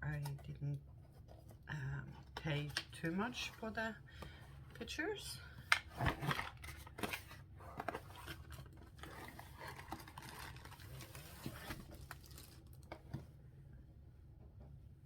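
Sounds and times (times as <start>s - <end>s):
packaging rustling and crinkling: 6.0s - 13.1s.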